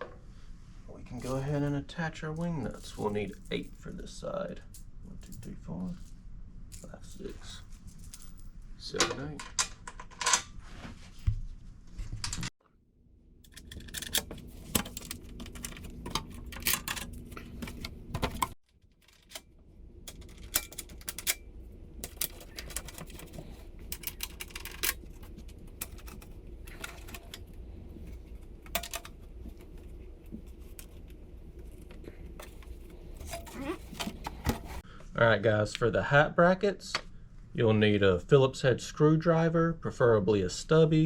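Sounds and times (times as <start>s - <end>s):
small metal clicks and rattles: 20.1s - 21.4s, 22.0s - 29.8s.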